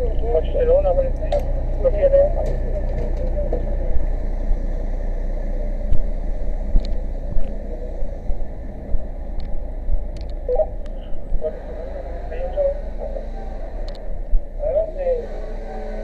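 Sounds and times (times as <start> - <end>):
fire engine motor humming: 0.0 - 16.0
equipment knocks and clatter: 2.4 - 3.7.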